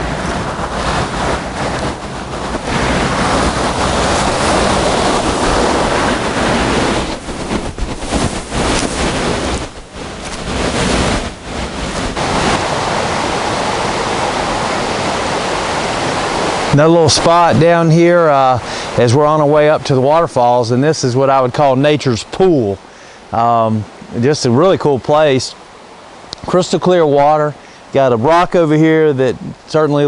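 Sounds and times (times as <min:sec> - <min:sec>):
wind buffeting microphone: 0:00.0 - 0:22.8
creek water rushing: 0:00.0 - 0:30.0.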